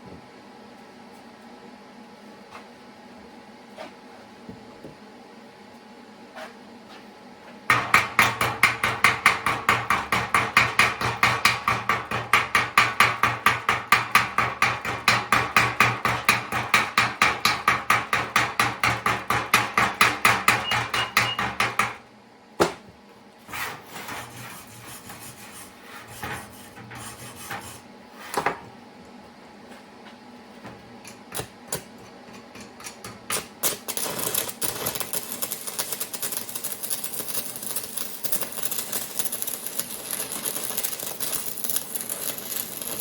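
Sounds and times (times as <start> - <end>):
low electrical buzz: 22.0 - 43.0
welding arc crackling: 33.3 - 43.0.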